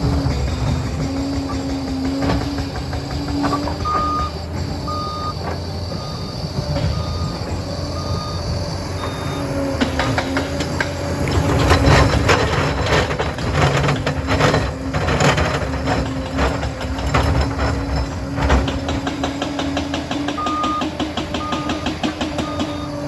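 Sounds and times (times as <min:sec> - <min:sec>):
dozer diesel engine running: 0:00.0 - 0:23.0
tracks clanking: 0:00.0 - 0:23.0
reversing alarm beeps: 0:03.1 - 0:10.4, 0:20.3 - 0:23.0.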